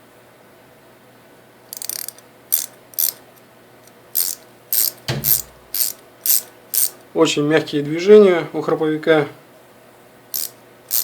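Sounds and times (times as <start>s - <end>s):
ratcheting wrench clicking: 1.7s - 3.4s, 4.2s - 7.0s, 10.4s - 11.0s
dull knock of handling: 5.0s - 5.7s.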